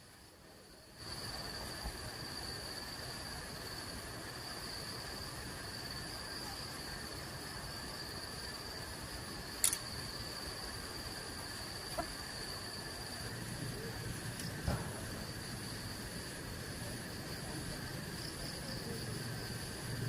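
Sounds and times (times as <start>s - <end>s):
high-pitched insect chorus: 0.0s - 20.0s
sharp click: 9.6s - 9.9s.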